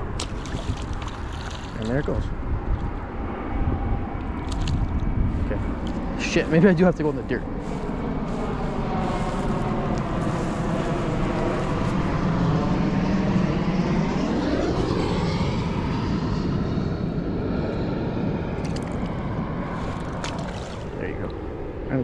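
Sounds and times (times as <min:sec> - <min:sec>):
propeller plane flying over: 0:00.0 - 0:22.0.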